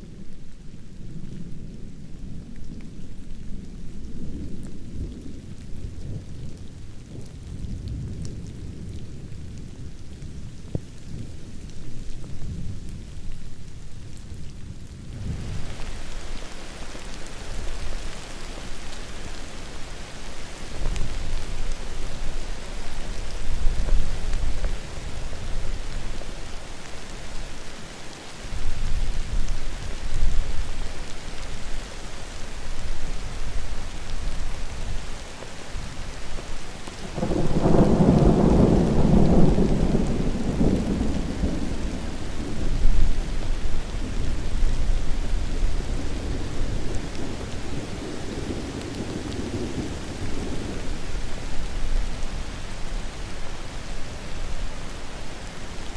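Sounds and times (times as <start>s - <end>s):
steady rain: 0.0s - 55.9s
thunder rumbling: 37.0s - 55.6s
loud thunder clap: 37.2s - 42.8s.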